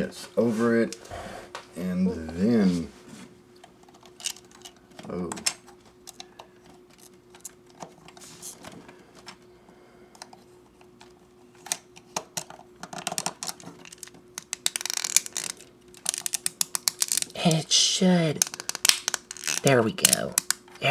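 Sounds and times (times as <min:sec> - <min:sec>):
plastic parts clicking and tapping: 0:03.6 - 0:09.4, 0:10.2 - 0:17.4, 0:18.4 - 0:20.8.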